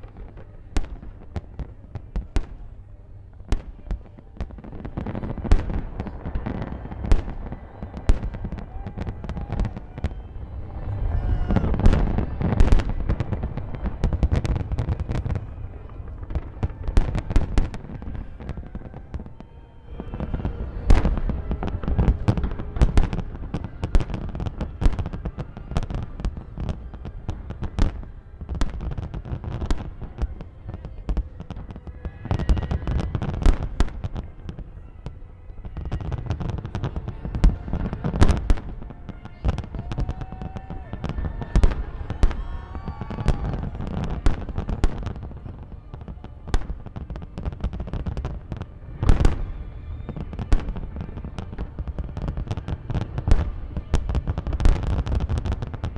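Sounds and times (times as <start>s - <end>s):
deep booming rumble: 4.4s - 19.3s.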